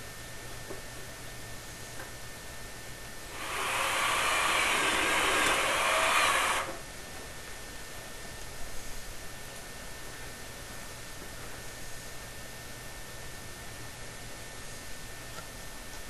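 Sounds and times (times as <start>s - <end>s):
power drill driving a screw: 3.3s - 6.8s.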